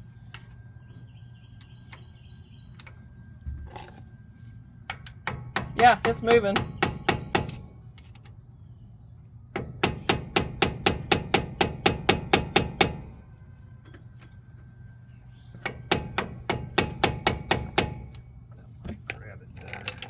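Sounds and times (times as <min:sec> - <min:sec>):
hammer blows on metal: 0:04.9 - 0:07.7.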